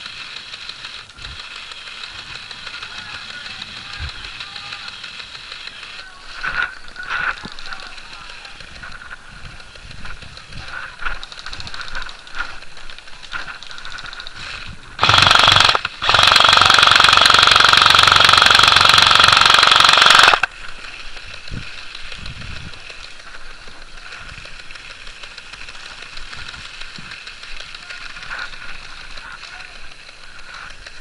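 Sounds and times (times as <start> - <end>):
airsoft gun firing full auto: 0.0 - 6.0, 11.1 - 23.0.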